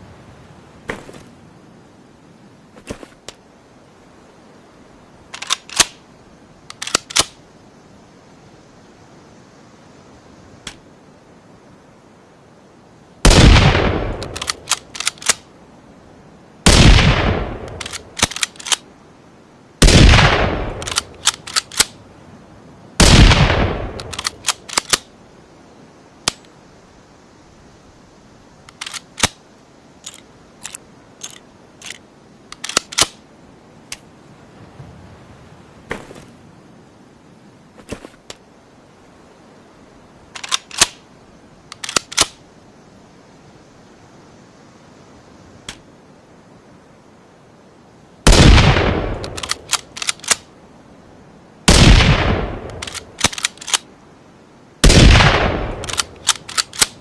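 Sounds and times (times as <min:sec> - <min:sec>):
sharp clicks: 0:05.3 - 0:06.0, 0:06.7 - 0:07.4, 0:14.1 - 0:15.4, 0:17.6 - 0:18.8, 0:20.7 - 0:22.0, 0:23.9 - 0:25.1, 0:28.6 - 0:29.4, 0:30.0 - 0:33.2, 0:40.3 - 0:41.0, 0:41.7 - 0:42.4, 0:49.1 - 0:50.5, 0:52.6 - 0:53.9, 0:54.9 - 0:57.0
rifle shots ringing out: 0:13.3 - 0:14.6, 0:16.7 - 0:18.4, 0:19.8 - 0:21.9, 0:23.0 - 0:25.0, 0:48.3 - 0:49.6, 0:51.7 - 0:53.6, 0:54.8 - 0:57.0.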